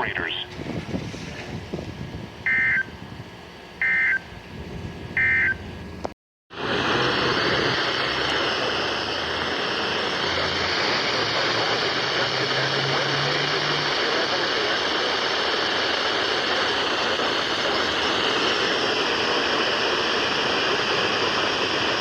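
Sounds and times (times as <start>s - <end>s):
loud radio static hiss: 0.0s - 0.6s, 6.5s - 22.0s.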